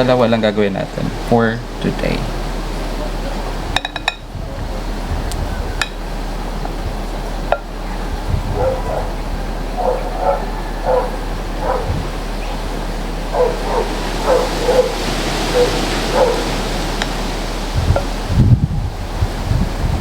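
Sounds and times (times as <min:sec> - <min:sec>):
background hiss: 0:00.0 - 0:20.0
dog making pitched calls: 0:08.5 - 0:12.1, 0:13.3 - 0:16.8.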